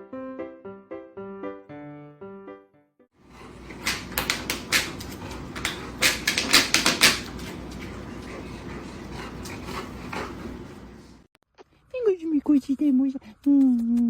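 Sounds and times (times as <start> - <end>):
steady low hum: 3.3 - 11.3.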